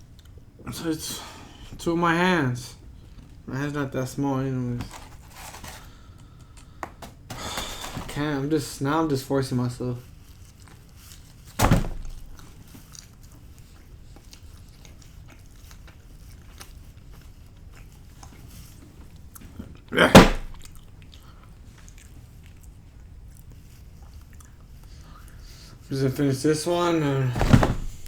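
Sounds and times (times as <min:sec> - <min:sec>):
mouth chewing pizza: 0:12.4 - 0:25.8.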